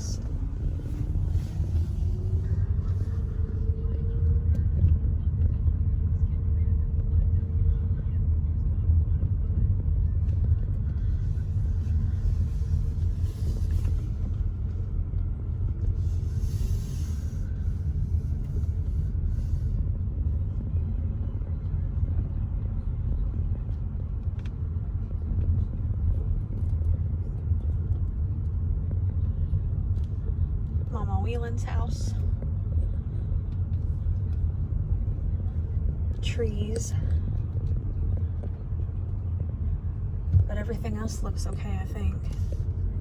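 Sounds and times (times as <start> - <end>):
car engine and road noise: 0.0 - 5.4, 9.9 - 27.6.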